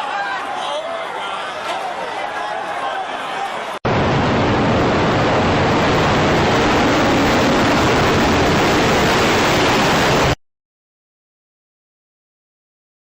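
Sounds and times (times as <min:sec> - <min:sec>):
loud rushing roar: 0:03.8 - 0:10.4.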